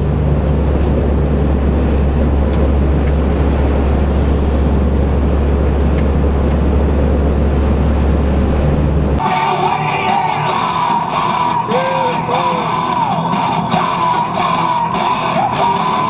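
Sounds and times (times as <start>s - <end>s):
road noise: 0.0s - 16.0s
truck engine drone: 0.0s - 16.0s
rock music with singing: 9.2s - 16.0s.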